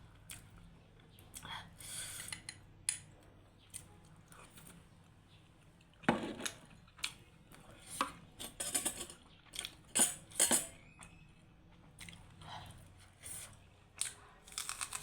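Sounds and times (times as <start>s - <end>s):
cutlery clinking against a dish: 8.4s - 9.2s, 9.9s - 10.8s.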